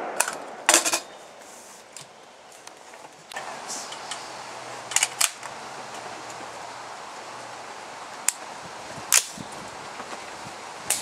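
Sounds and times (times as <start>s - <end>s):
gunshots: 0.0s - 1.0s
steady background hiss: 0.0s - 11.0s.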